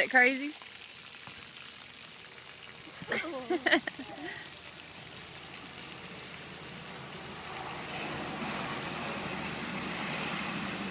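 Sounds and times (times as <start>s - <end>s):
water rushing from tank: 0.0s - 10.9s.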